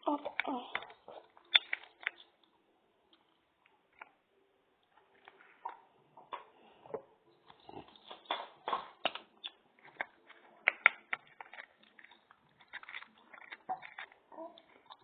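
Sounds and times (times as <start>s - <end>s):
slime clicking and squelching: 0.0s - 2.5s, 7.5s - 15.0s.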